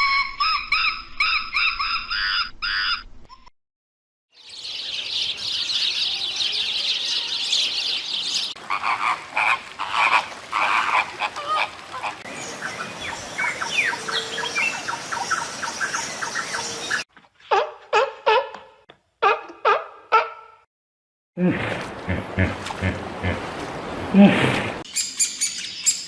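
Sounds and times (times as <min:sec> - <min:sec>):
animal calls chorus: 0:08.6 - 0:18.5.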